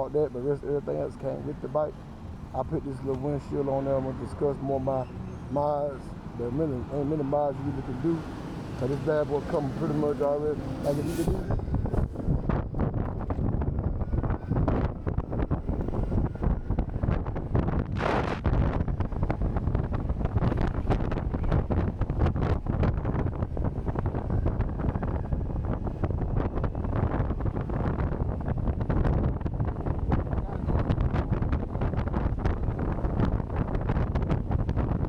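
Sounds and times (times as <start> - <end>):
wind buffeting microphone: 0.0 - 35.0.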